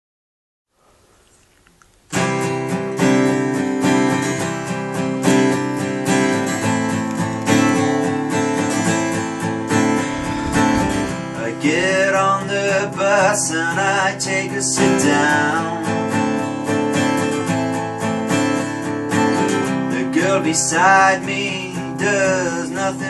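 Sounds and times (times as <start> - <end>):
faint background hiss: 0.7 - 2.2
acoustic guitar strumming: 2.1 - 23.0.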